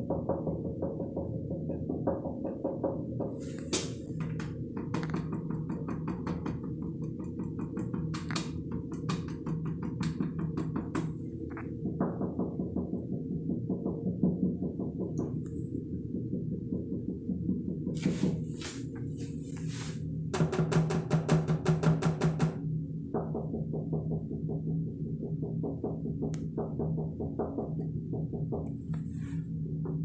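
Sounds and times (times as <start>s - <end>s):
light tapping on objects: 3.4s - 12.2s.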